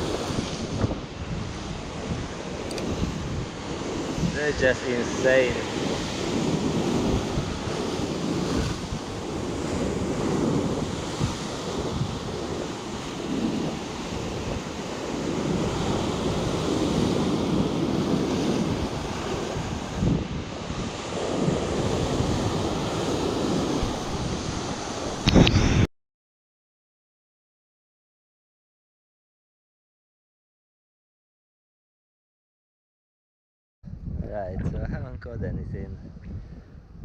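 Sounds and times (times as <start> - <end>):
waves breaking and surging: 0.0 - 25.9
wind buffeting microphone: 0.0 - 25.9, 33.8 - 37.0.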